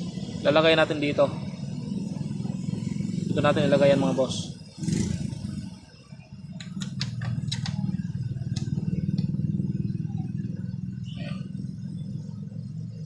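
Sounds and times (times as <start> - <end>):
steady low hum: 0.0 - 13.0
cables and connectors clicking: 6.6 - 7.8.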